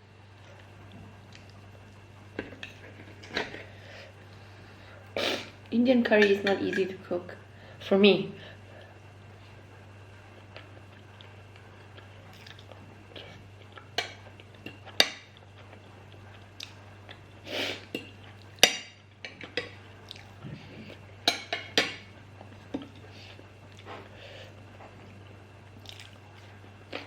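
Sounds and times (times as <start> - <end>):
chewing and mouth sounds: 10.4 - 17.3, 20.0 - 21.0, 25.8 - 27.0.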